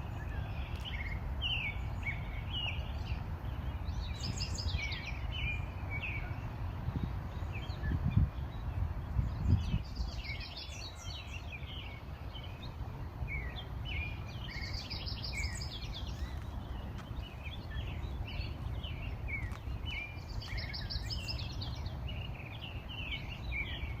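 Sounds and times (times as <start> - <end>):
songbirds chirping and singing: 0.0 - 24.0
steady low rumble: 0.0 - 24.0.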